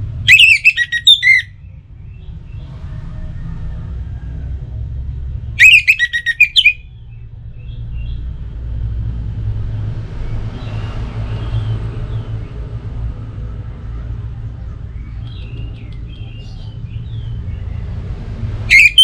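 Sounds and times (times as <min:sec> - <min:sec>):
faint bird notes: 0:00.3 - 0:01.5, 0:05.6 - 0:06.8
thrush singing whistled notes: 0:00.3 - 0:01.5, 0:05.6 - 0:06.8, 0:18.7 - 0:19.0.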